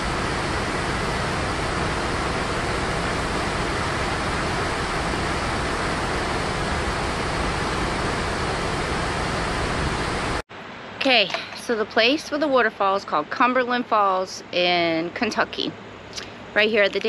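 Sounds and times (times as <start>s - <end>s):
waterfall rushing: 0.0s - 10.4s.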